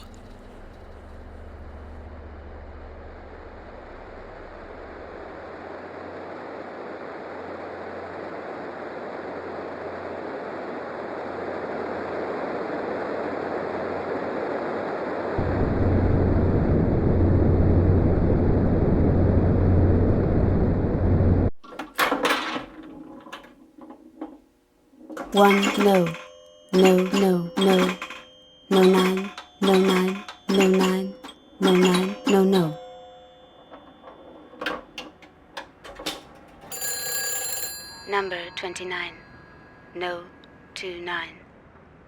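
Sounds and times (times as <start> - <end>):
deep hum: 0.0 - 12.7, 13.3 - 21.6.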